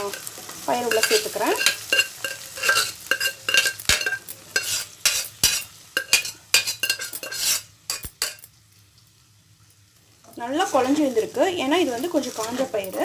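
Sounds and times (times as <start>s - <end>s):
ladle scraping and clinking in pan: 0.0s - 8.5s.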